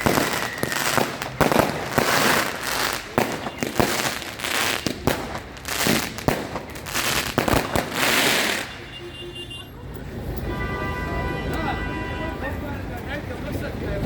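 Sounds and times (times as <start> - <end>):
firework crackle: 0.0 - 8.8
firework bangs: 0.0 - 8.9.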